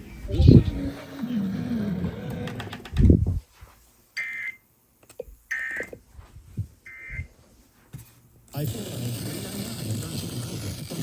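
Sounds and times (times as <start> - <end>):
shrill warbling data tones: 0.2 - 1.1.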